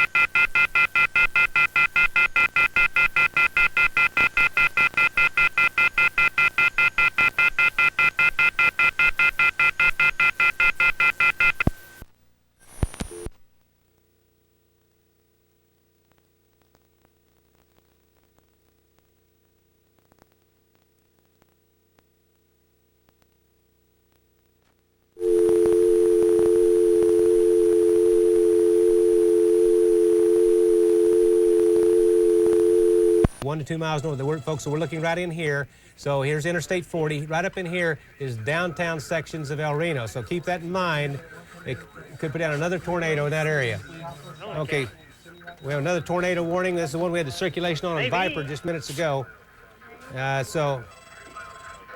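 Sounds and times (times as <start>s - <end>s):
telephone off-hook warning tone: 25.2s - 33.3s.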